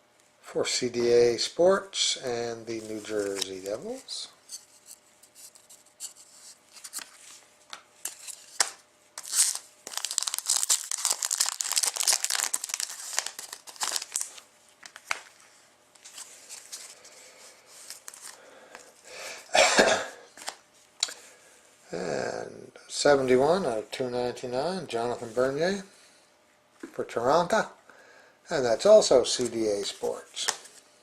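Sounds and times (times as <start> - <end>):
cards rustling and clicking: 2.8 - 4.0, 4.8 - 17.0, 17.8 - 18.9, 20.4 - 21.2
wrapper crinkling and tearing: 8.1 - 15.3.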